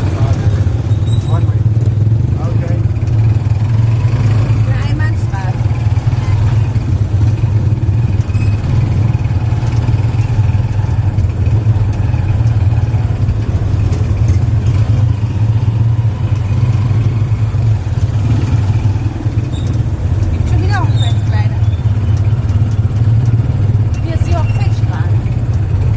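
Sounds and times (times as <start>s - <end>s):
vehicle engine droning: 0.0s - 25.9s.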